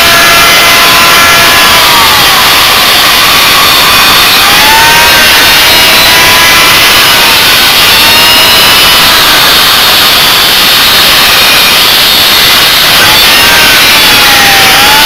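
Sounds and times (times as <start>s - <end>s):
power tool cutting metal: 0.0s - 15.0s.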